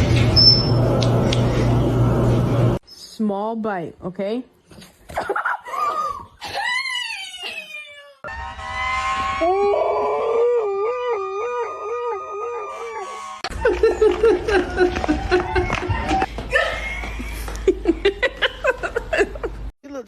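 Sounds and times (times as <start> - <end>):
dogs howling: 9.4 - 16.3.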